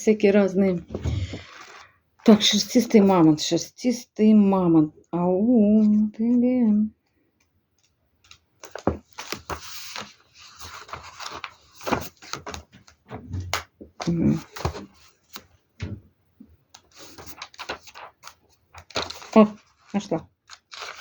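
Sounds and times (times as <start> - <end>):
objects knocking on a table: 8.8 - 9.0.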